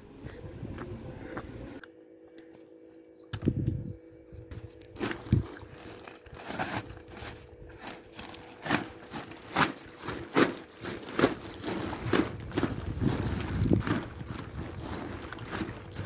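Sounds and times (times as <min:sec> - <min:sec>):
sharp crunching strokes: 0:04.5 - 0:16.0
plastic sheeting crinkling: 0:04.9 - 0:16.0.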